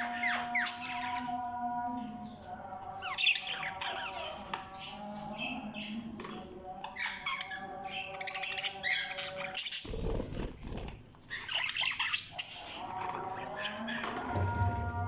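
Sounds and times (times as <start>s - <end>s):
budgerigars chirping and squawking: 0.0s - 1.4s, 3.0s - 14.2s.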